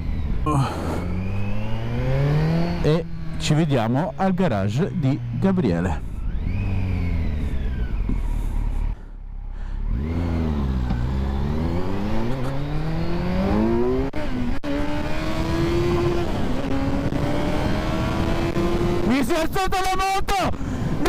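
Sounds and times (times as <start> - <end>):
motorcycle engine accelerating: 0.0 - 19.2.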